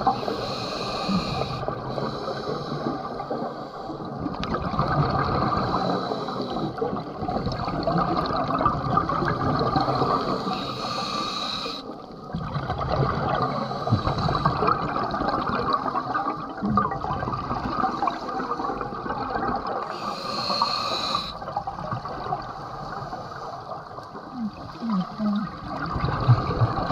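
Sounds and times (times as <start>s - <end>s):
regulator inhale hiss: 0.0s - 4.1s, 5.5s - 6.8s, 9.9s - 12.0s, 13.5s - 14.6s, 19.9s - 21.4s
exhaled air bubbling underwater: 0.0s - 26.9s.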